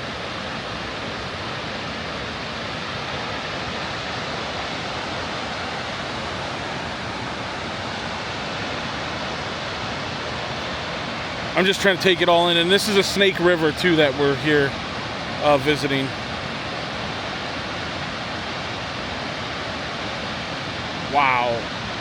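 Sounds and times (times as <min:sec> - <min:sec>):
waterfall rushing: 0:20.9 - 0:22.0.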